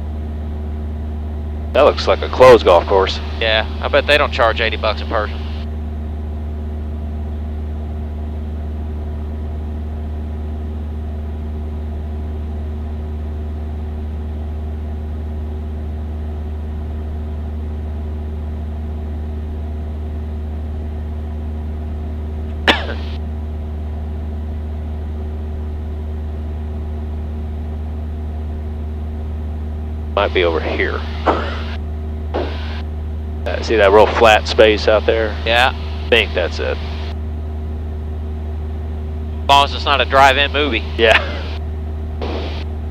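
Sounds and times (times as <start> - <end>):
airplane engine and propeller drone: 0.0 - 42.9.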